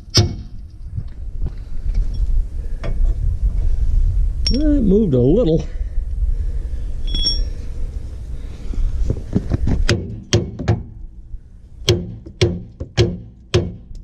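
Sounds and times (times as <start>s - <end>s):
hammer striking steel: 11.9s - 13.9s.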